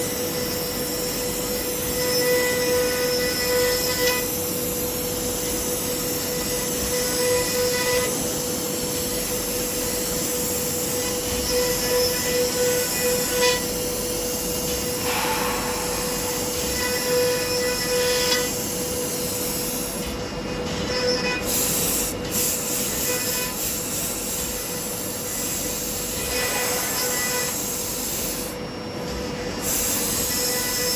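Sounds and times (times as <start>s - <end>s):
cutting hiss: 11.8s - 19.9s, 21.5s - 28.6s.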